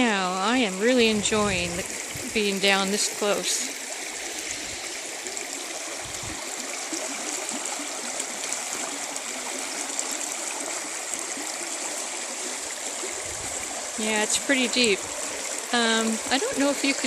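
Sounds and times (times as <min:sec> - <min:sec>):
creek water running over rocks: 0:00.0 - 0:17.0.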